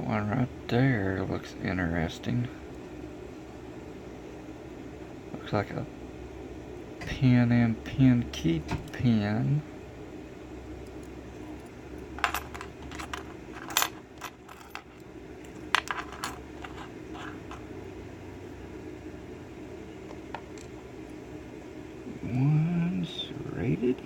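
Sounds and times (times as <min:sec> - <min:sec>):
small metal lock parts clinking: 0:11.0 - 0:17.6.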